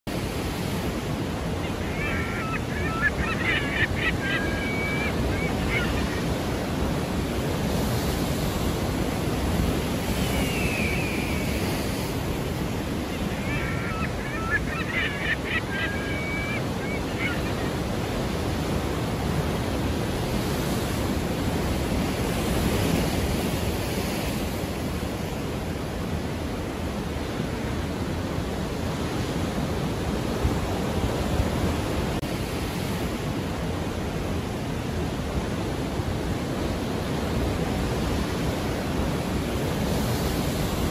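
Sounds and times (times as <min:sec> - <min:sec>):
ocean surf washing: 0:00.1 - 0:40.9
falling high bird call: 0:01.7 - 0:06.4, 0:13.2 - 0:17.8.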